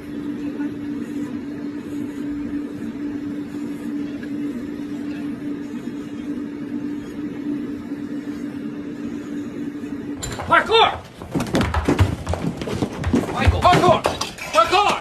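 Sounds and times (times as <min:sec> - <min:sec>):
steady mechanical hum: 0:00.0 - 0:15.0.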